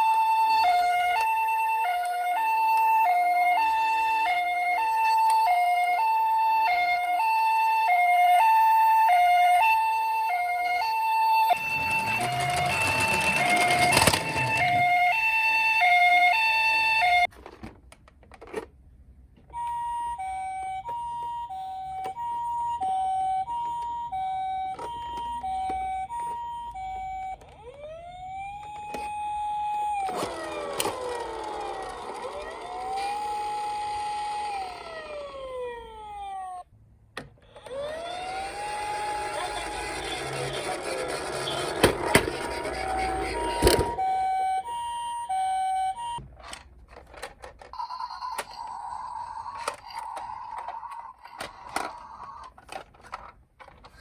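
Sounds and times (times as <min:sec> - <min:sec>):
two-tone hi-lo siren: 0:00.0 - 0:17.3, 0:19.6 - 0:36.7, 0:37.6 - 0:46.2
wailing sirens: 0:00.0 - 0:17.3, 0:20.2 - 0:36.7, 0:37.6 - 0:46.2.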